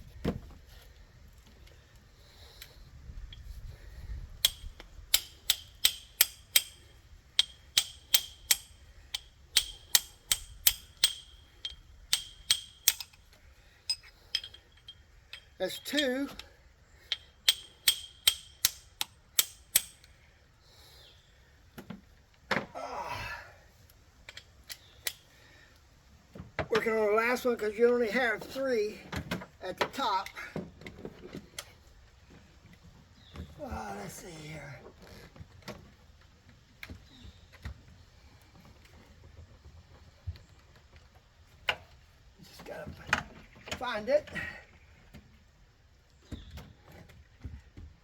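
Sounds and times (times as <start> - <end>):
ratchet wrench clicking: 4.4 - 13.3, 17.1 - 20.1.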